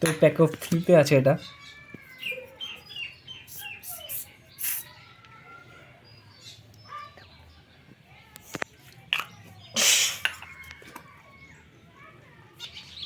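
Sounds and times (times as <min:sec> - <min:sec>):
aerosol can spraying: 0:03.5 - 0:04.9.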